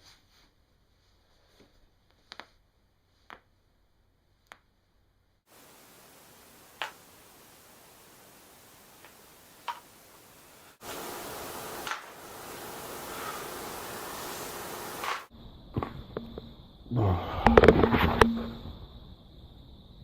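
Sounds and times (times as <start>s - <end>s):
background hiss: 0.0s - 20.0s.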